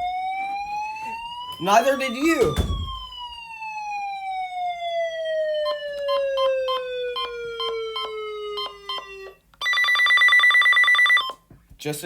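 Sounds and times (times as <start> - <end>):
warning siren winding down: 0.0 - 9.4.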